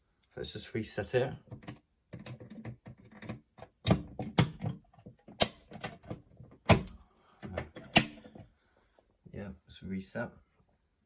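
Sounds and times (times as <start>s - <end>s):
mechanical clicks and knocks: 1.4s - 8.3s.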